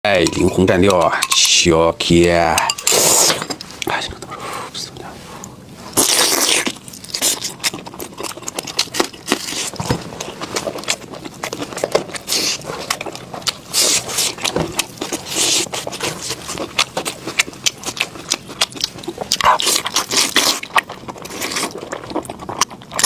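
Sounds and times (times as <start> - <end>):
wet chewing and smacking: 5.4 - 23.0.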